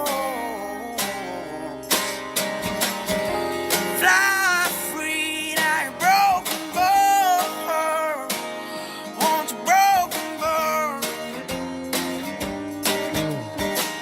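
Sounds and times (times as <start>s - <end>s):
man singing with vibrato: 0.0s - 2.2s, 3.3s - 11.7s
strummed acoustic guitar: 0.0s - 14.0s.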